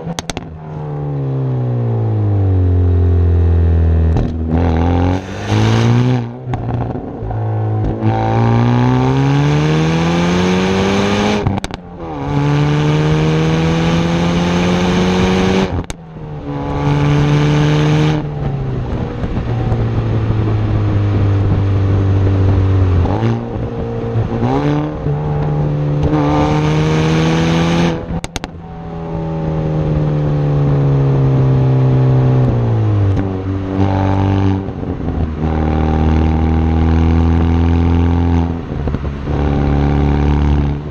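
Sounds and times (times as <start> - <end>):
car engine accelerating: 0.0 - 40.9.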